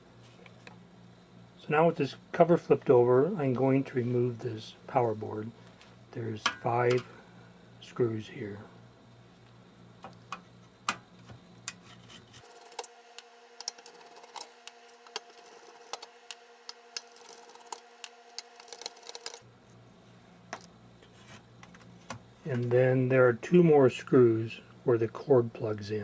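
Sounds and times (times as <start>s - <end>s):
screwdriver clicking: 12.4s - 19.4s.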